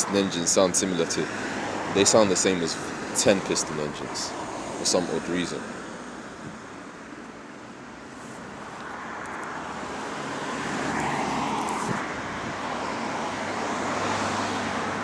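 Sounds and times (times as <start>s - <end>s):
vehicle passing close by: 1.0s - 4.8s, 8.3s - 15.0s.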